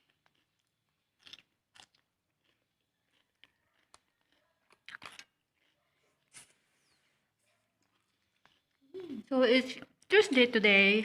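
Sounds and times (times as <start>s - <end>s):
crisp crunches of food bitten: 0.0s - 6.5s
faint chewing: 0.0s - 10.2s.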